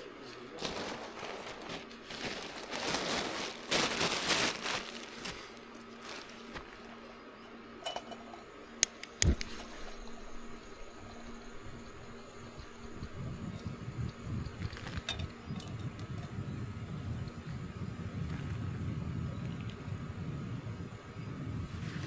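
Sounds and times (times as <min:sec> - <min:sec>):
sharp clicks: 0:08.8 - 0:13.2.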